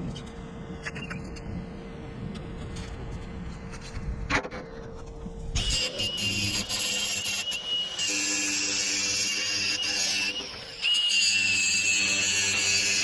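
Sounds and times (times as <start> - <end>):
metalworking tool whining: 5.6 - 13.0.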